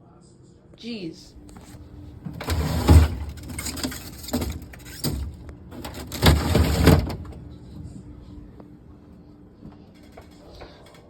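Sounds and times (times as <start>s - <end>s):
metal pot rattling: 2.3s - 7.2s.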